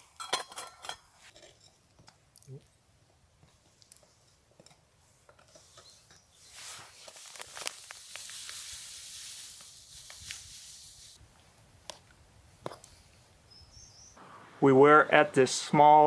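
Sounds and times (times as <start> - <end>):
sharp pops and crackles: 5.8 - 13.0
food sizzling in a pan: 7.6 - 11.2.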